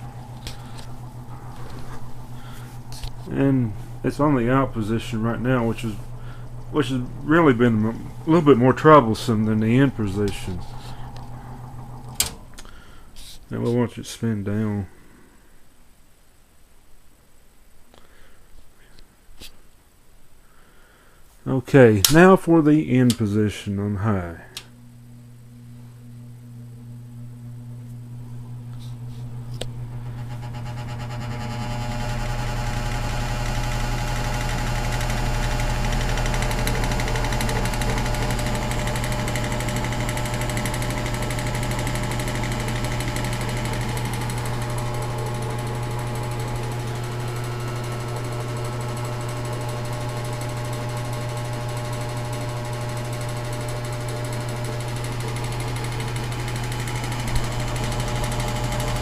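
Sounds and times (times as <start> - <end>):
fan blades whooshing and rattling: 0.0 - 13.8, 27.8 - 47.9
electric fan motor humming: 0.0 - 15.1, 21.2 - 59.0.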